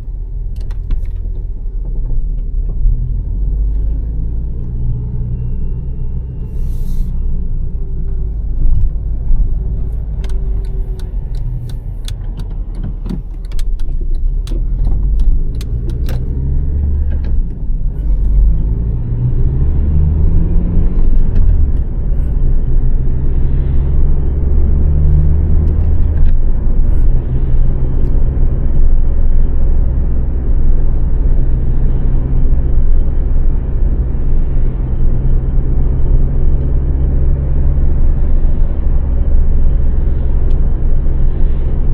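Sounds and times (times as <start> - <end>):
car engine running: 0.0 - 41.9
road noise: 0.0 - 41.9
sharp clicks and rattles: 9.8 - 17.6.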